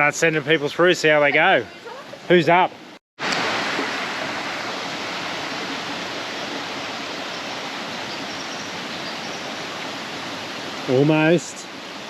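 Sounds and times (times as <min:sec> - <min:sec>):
creek water cascading over rocks: 0:03.2 - 0:12.0.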